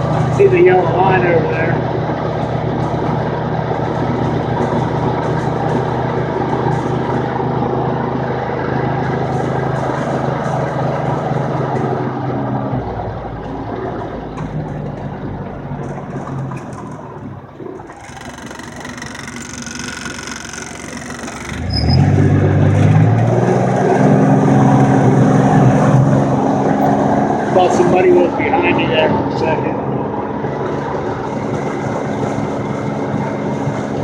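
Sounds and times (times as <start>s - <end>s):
vehicle engine running: 0.0s - 34.0s.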